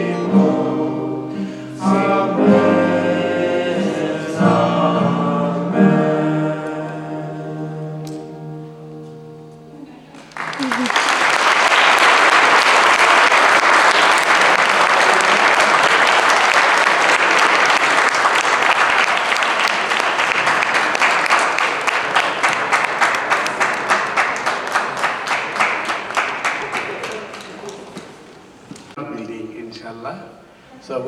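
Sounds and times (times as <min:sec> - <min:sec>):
audience applauding: 0:10.1 - 0:29.0
rhythmic clapping: 0:10.1 - 0:29.0.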